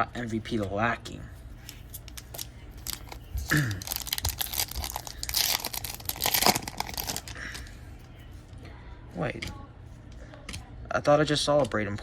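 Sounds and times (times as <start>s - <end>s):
foil wrapper tearing and crinkling: 1.9s - 7.4s.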